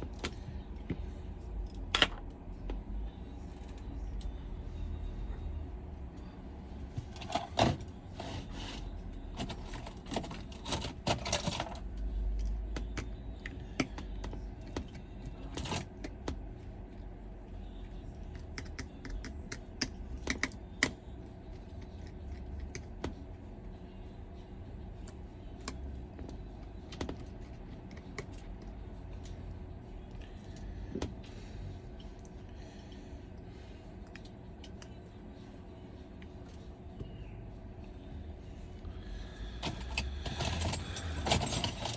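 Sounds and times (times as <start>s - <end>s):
low steady hum: 0.0s - 41.9s.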